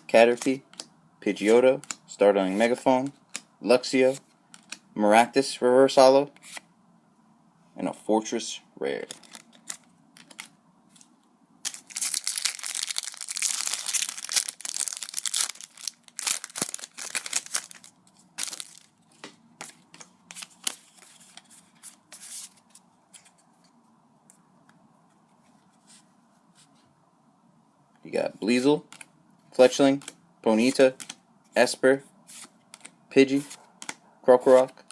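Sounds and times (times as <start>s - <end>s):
cards being handled: 0.3s - 4.9s, 8.9s - 24.4s, 28.5s - 31.7s, 32.3s - 34.9s
foil wrapper tearing and crinkling: 11.6s - 18.9s.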